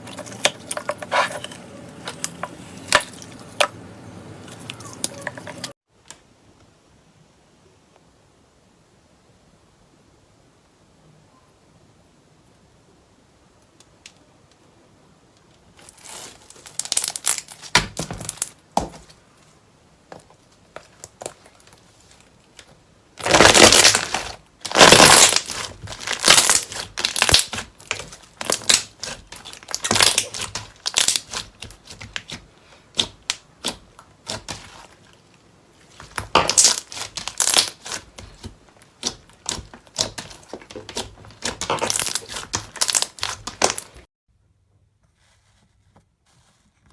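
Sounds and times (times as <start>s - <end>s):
slime crackling and popping: 15.8s - 18.6s, 23.2s - 35.0s, 35.9s - 44.0s.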